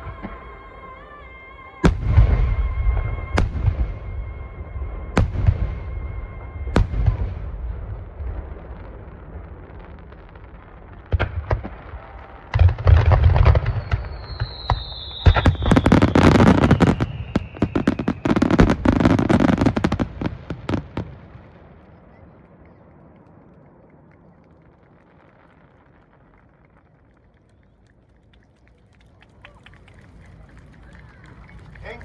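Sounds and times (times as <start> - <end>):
falling firework whistle: 0.0 - 8.1, 11.9 - 27.7
firework booms: 1.8 - 23.4
firework shell bursts and crackling: 10.2 - 21.5.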